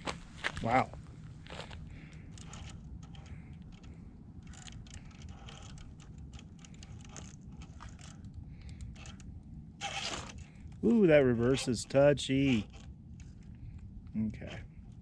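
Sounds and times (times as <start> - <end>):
steady low rumble: 0.0 - 15.0
toy car tyres clicking over rock: 2.2 - 13.6.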